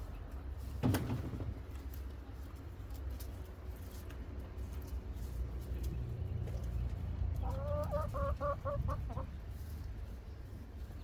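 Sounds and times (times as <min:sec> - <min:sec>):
chicken clucking: 0:06.4 - 0:09.6.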